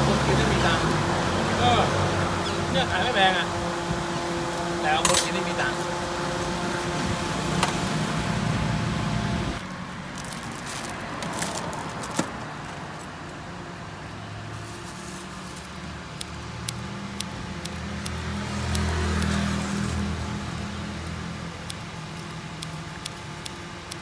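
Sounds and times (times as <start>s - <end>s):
passing motor vehicles rumble: 0.0s - 23.8s
sharp clicks: 15.6s - 19.5s.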